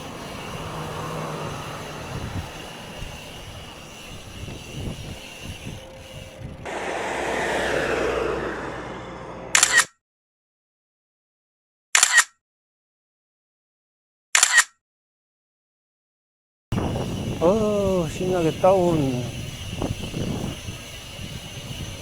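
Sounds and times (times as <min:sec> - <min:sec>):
wind on microphone: 0:00.0 - 0:09.3, 0:16.8 - 0:22.0.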